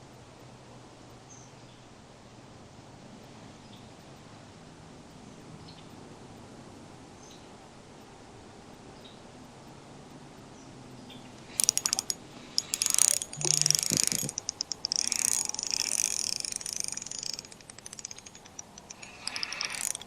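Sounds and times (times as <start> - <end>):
fishing reel drag clicking: 11.4 - 20.0.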